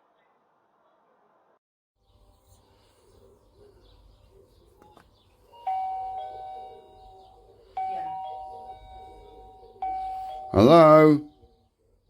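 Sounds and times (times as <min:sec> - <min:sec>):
doorbell ding-dong chime: 0:05.6 - 0:11.2.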